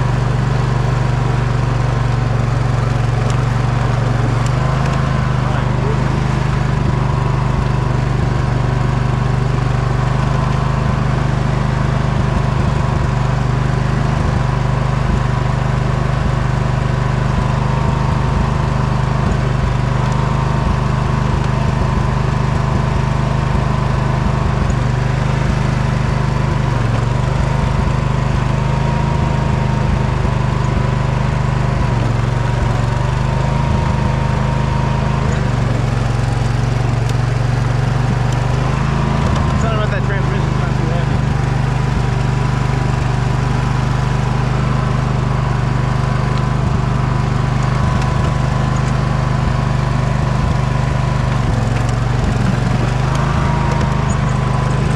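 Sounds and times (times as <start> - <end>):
riding mower engine running: 0.0 - 54.9.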